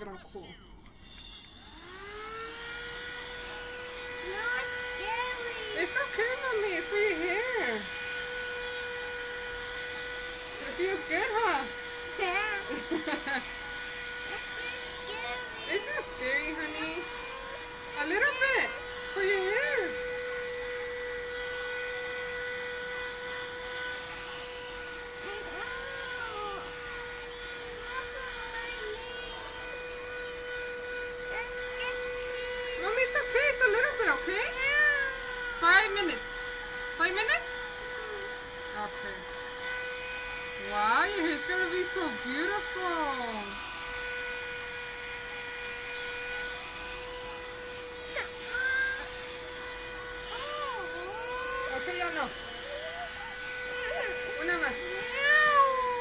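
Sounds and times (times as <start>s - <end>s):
hair dryer running: 0.0s - 56.0s
child whimpering cry: 48.1s - 49.4s, 50.3s - 51.8s, 52.6s - 54.4s, 55.0s - 56.0s.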